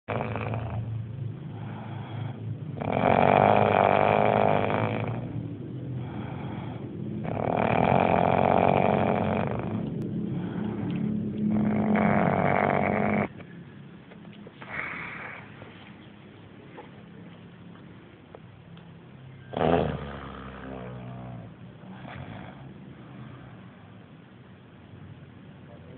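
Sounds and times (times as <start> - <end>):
faint breaths: 0.2 - 18.4, 19.1 - 24.7
person snoring: 1.5 - 5.4, 6.0 - 13.4, 14.6 - 15.5, 19.5 - 23.7.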